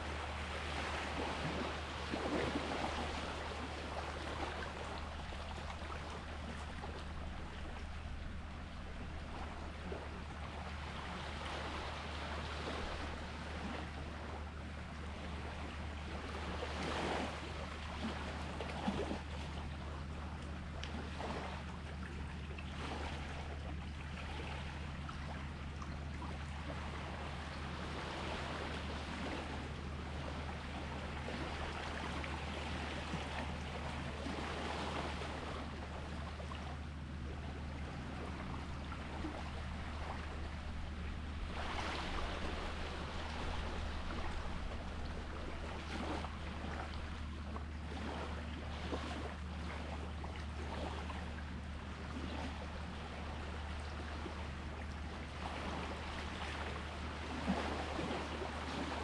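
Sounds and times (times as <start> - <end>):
small sea waves lapping: 0.0 - 59.0
steady low hum: 0.0 - 59.0.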